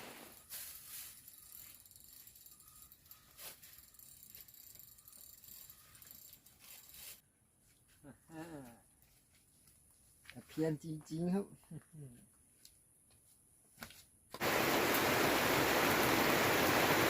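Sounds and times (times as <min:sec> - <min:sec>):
fishing reel clicking: 0:01.2 - 0:06.5.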